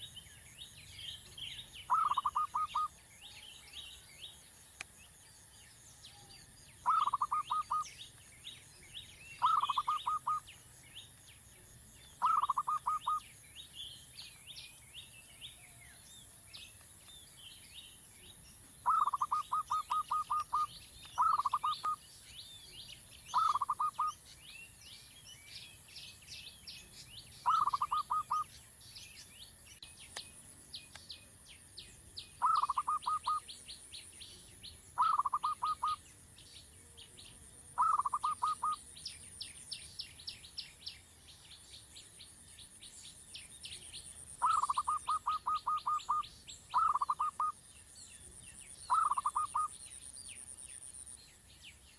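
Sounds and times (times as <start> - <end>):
faint birds chirping: 0.0 - 51.9
bird calling in rapid pulses: 1.5 - 3.0, 6.2 - 8.1, 9.0 - 11.2, 12.0 - 13.4, 18.8 - 22.1, 23.3 - 24.3, 27.3 - 28.6, 32.3 - 33.6, 34.9 - 36.1, 37.7 - 39.0, 44.1 - 47.6, 48.8 - 49.9.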